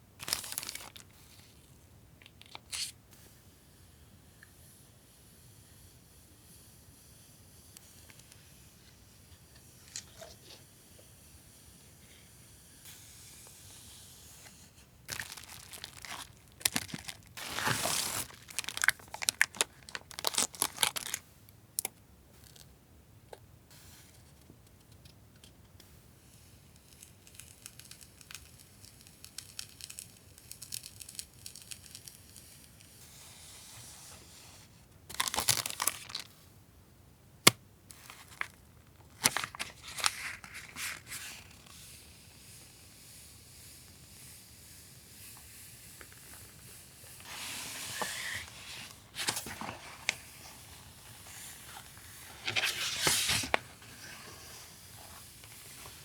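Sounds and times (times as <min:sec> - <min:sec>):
packaging crinkling and tearing: 0:00.2 - 0:01.1, 0:15.1 - 0:21.2, 0:35.1 - 0:36.3, 0:38.0 - 0:41.5
packaging rustling: 0:00.2 - 0:01.1, 0:15.1 - 0:21.2, 0:35.1 - 0:36.3, 0:38.0 - 0:41.5, 0:47.2 - 0:54.2.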